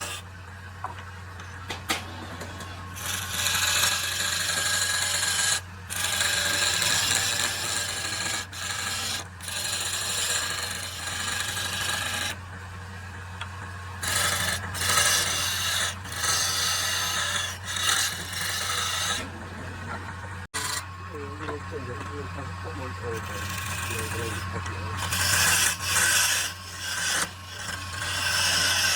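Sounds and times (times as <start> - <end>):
abrasive tool scraping wood: 0.0 - 0.3, 1.0 - 12.5, 13.4 - 28.9
steady low hum: 12.4 - 28.2.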